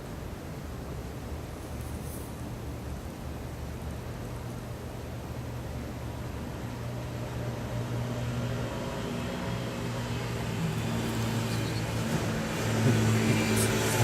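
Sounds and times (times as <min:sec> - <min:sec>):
background hiss: 0:00.0 - 0:14.0
low motor hum: 0:03.5 - 0:14.0.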